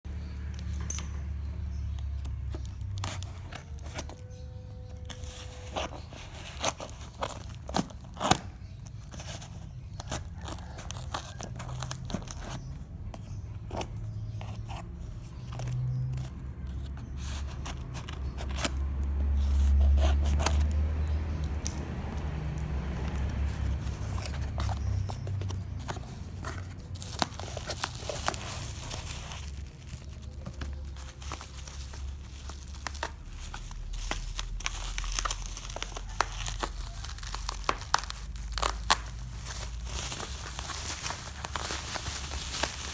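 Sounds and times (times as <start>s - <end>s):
wrapping crinkling: 2.1s - 42.9s
tape and plastic tearing: 17.6s - 42.9s.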